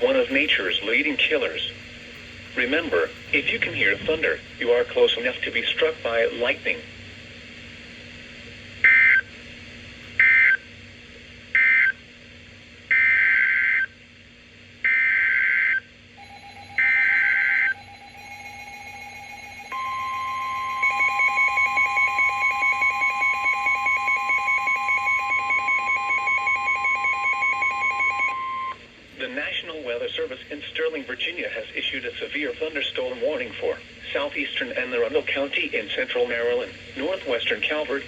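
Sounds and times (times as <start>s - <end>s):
higher alert tone: 16.2s - 26.1s
warbling data bursts: 16.2s - 27.3s
steady alert tone: 16.2s - 27.5s.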